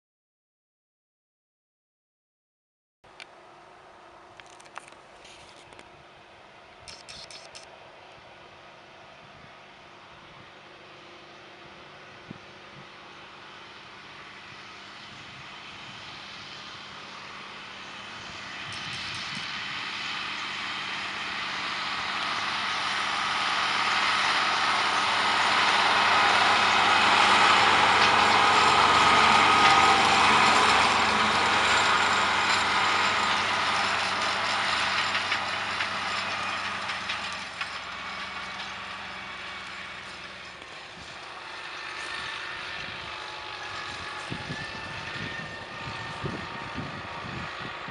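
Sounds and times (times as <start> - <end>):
tractor engine: 3.1 - 47.9
clatter of farm implement: 14.7 - 47.9.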